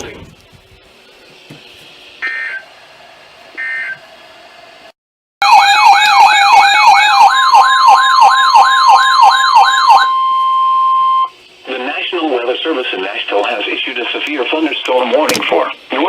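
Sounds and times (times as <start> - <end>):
electronic siren yelping: 2.2 - 2.6, 3.6 - 4.0, 5.4 - 11.3
steady warning alarm tone: 2.2 - 2.7, 3.6 - 4.0, 5.4 - 11.3.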